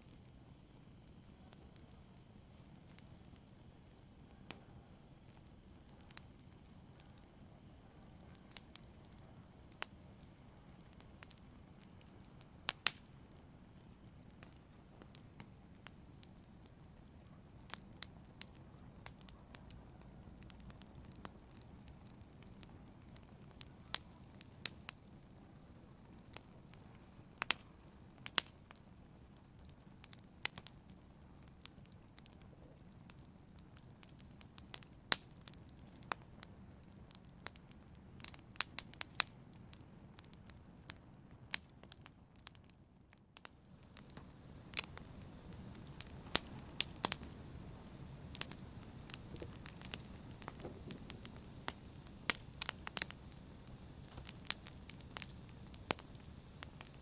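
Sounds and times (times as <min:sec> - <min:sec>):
fire crackling and popping: 0:00.0 - 0:57.0
flames rushing: 0:43.9 - 0:57.0.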